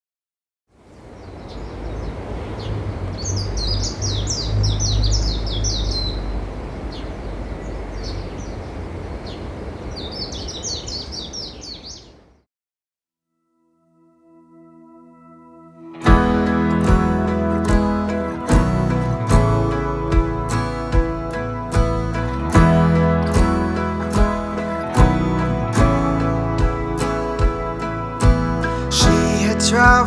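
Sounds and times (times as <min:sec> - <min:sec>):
wind and surf rumble: 0:00.8 - 0:11.4
small birds twittering: 0:00.8 - 0:12.4.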